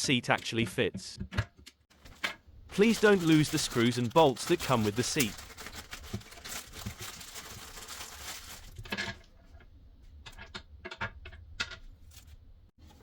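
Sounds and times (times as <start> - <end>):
plastic parts rustling: 1.9 - 9.6.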